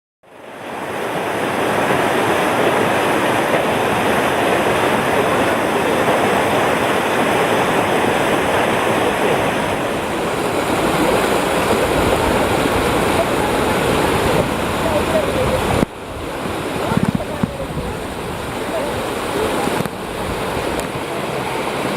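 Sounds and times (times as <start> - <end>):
waterfall rushing: 0.3 - 21.9.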